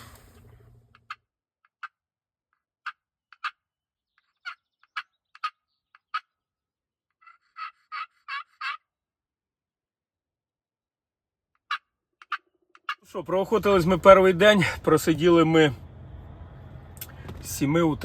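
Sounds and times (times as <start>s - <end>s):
turkey yelps: 4.4s - 6.3s, 7.2s - 8.8s.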